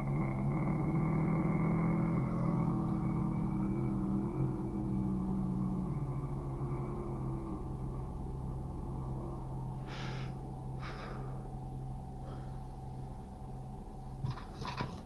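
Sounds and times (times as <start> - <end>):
steady low hum: 0.0 - 15.0
short breathy exhales: 9.8 - 11.5.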